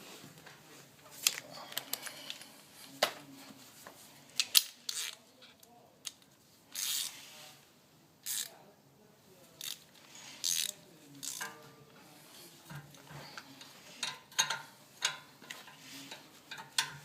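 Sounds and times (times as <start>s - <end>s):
metal tools clinking and clanking: 12.7s - 17.0s.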